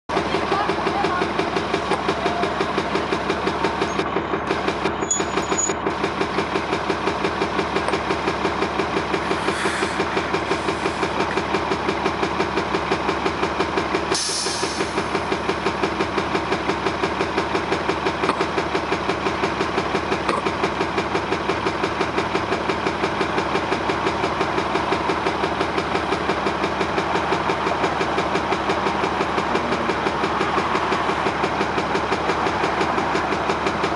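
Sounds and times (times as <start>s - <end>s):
bus diesel engine pulsing: 0.1s - 33.9s
short air hiss: 9.2s - 11.1s, 14.1s - 15.0s.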